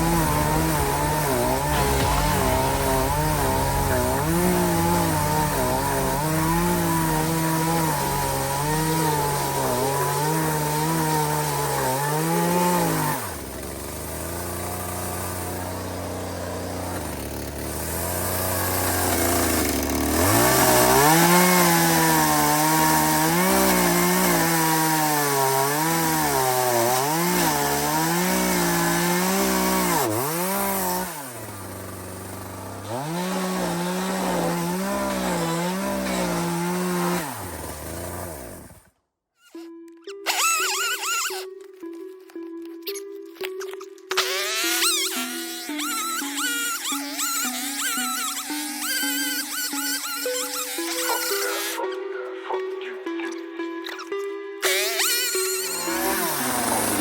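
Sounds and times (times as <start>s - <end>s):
chainsaw idling: 0.0s - 38.9s, 54.9s - 57.0s
chainsaw cutting a log: 0.0s - 39.0s, 39.6s - 42.0s, 44.1s - 51.9s, 54.0s - 57.0s.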